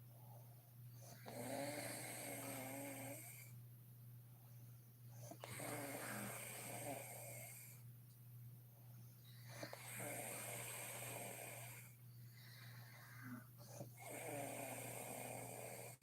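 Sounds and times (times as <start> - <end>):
quiet breathing: 0.0 - 3.7, 4.3 - 7.9, 8.7 - 16.0
steady low hum: 0.0 - 16.0
woman snoring: 1.0 - 3.5, 5.2 - 7.8, 9.4 - 12.0, 12.8 - 16.0.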